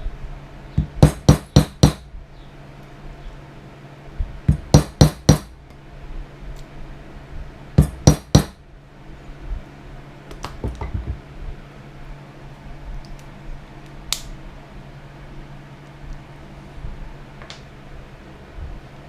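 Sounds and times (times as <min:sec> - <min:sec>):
hammer striking metal: 0:00.8 - 0:02.0, 0:07.8 - 0:08.6.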